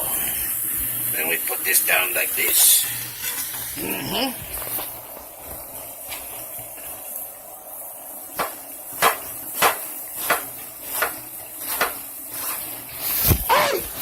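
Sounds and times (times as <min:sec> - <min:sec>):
knife chopping cabbage on board: 0:08.4 - 0:12.0.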